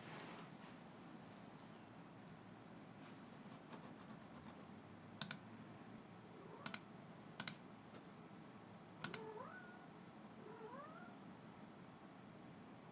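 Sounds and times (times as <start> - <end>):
sharp clicks: 5.2 - 5.4, 6.6 - 7.6, 9.0 - 9.2.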